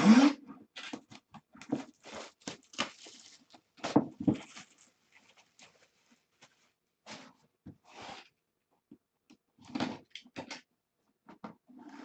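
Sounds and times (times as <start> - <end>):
packaging rustling and crinkling: 0.8 - 6.9.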